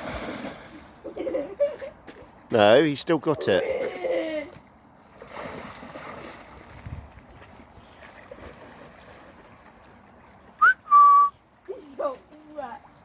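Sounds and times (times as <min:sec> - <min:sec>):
stream water running: 0:00.0 - 0:13.0
wind buffeting microphone: 0:06.2 - 0:08.6.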